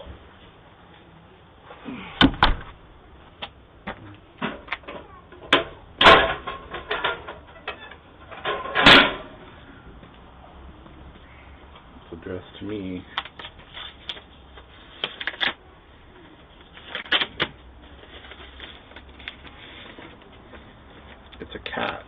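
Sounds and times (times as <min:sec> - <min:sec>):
door opening and shutting: 0:02.2 - 0:02.8.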